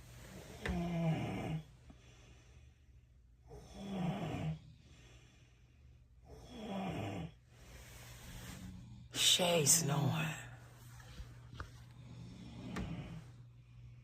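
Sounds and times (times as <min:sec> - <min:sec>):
person snoring: 0:00.5 - 0:01.7, 0:03.5 - 0:05.0, 0:06.2 - 0:07.4.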